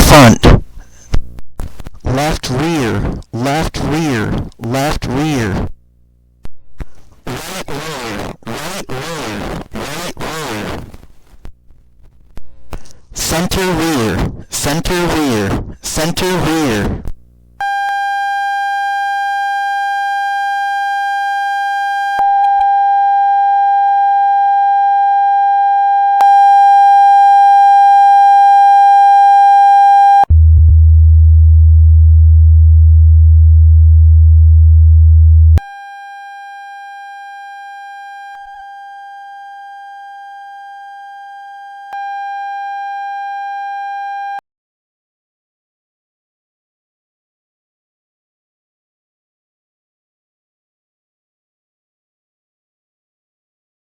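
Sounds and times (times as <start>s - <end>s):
deep bass tone: 30.3s - 35.6s.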